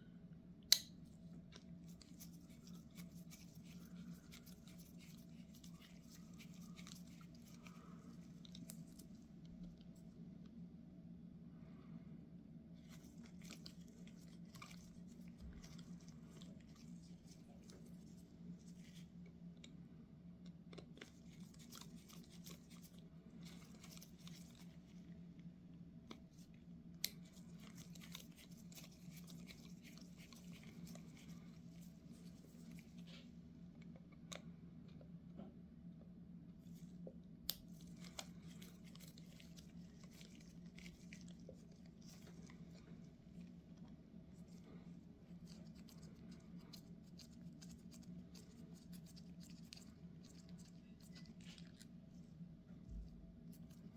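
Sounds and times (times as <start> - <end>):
steady low hum: 0.0 - 53.9.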